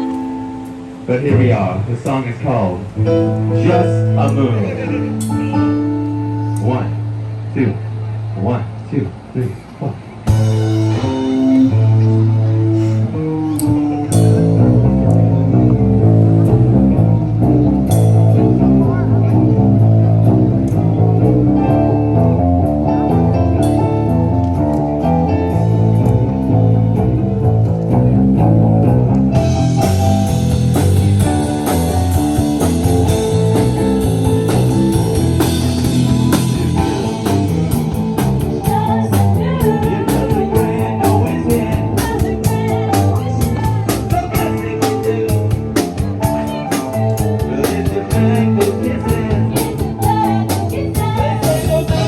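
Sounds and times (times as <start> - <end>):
rock band playing live: 2.8 - 7.5, 10.1 - 52.0
drums with cymbals: 10.3 - 11.6, 16.5 - 20.9, 29.4 - 52.0.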